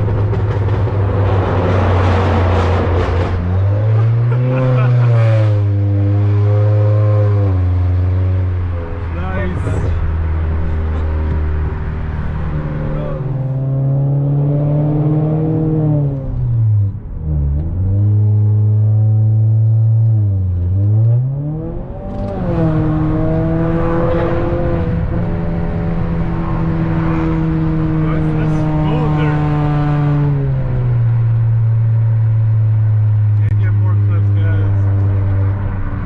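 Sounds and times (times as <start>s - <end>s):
loud car engine revving: 0.0s - 36.0s.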